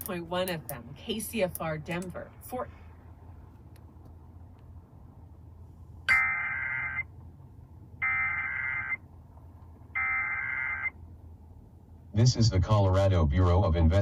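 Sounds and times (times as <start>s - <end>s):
buzzing digital data tones: 6.1s - 7.0s.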